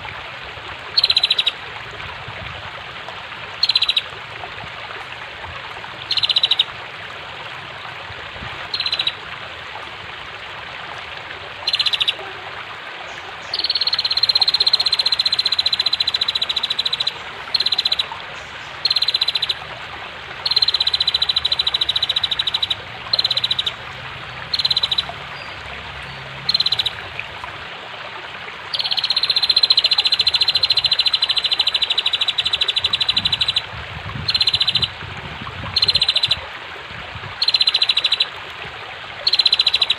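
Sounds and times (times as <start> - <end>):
rushing flowing water: 0.0 - 39.9
bird ticking trills: 1.0 - 1.6, 3.6 - 4.1, 6.1 - 6.7, 8.7 - 9.2, 11.6 - 12.3, 13.4 - 19.6, 20.4 - 23.8, 24.4 - 27.1, 28.7 - 33.6, 34.2 - 34.9, 35.8 - 36.4, 37.4 - 38.3, 39.2 - 39.9.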